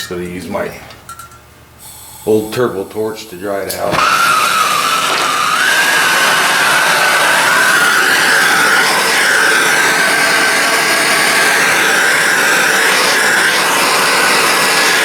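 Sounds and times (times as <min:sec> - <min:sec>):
torch burning with rushing hiss: 0:03.0 - 0:15.0
wavering whistle: 0:04.0 - 0:15.0.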